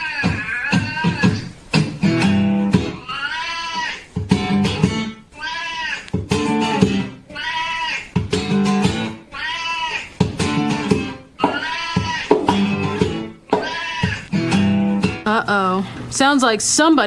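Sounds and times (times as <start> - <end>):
goat-like call: 0.0 - 1.6, 2.9 - 4.1, 5.4 - 6.2, 7.3 - 8.2, 9.1 - 10.3, 11.4 - 12.9, 13.6 - 14.3
acoustic guitar strums: 0.2 - 3.0, 4.1 - 5.3, 6.1 - 7.2, 8.0 - 9.3, 10.0 - 15.4.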